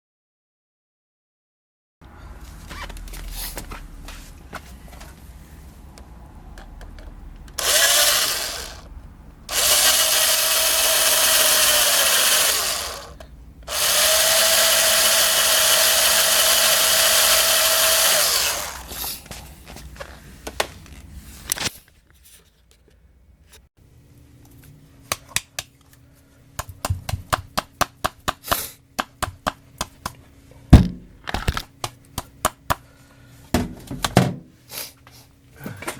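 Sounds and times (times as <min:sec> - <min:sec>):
electric power tool spinning: 0:07.6 - 0:08.9, 0:09.5 - 0:19.0.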